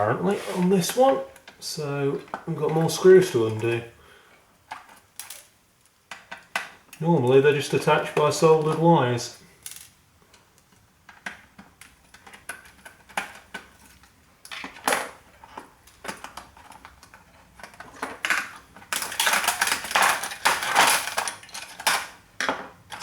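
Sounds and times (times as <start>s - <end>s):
small metal parts clicking: 4.7s - 7.0s, 9.6s - 10.0s, 10.6s - 23.0s.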